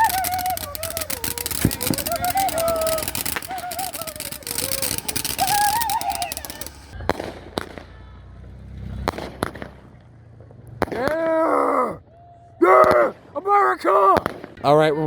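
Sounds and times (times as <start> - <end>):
people shouting: 0.0 - 7.0, 10.9 - 12.0, 12.6 - 14.3
sharp firework pops: 0.0 - 8.0, 8.9 - 11.3, 14.2 - 14.6
fireworks crackling: 0.0 - 11.2, 12.8 - 15.0.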